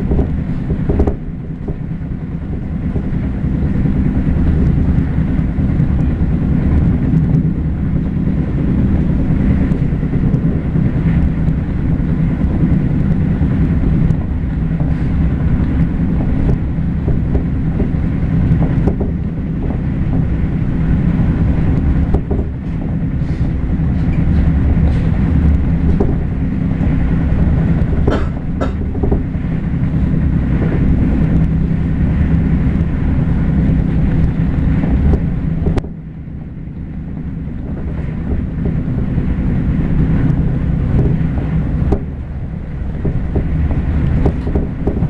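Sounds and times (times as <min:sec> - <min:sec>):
sharp knocks: 0:00.0 - 0:01.8, 0:27.8 - 0:29.4
train bogie clunking rumble: 0:00.0 - 0:45.0
train running noise: 0:00.0 - 0:45.0.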